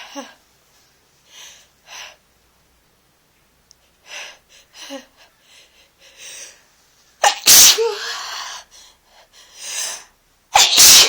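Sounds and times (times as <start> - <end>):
person sneezing: 7.2 - 8.6, 10.6 - 11.0.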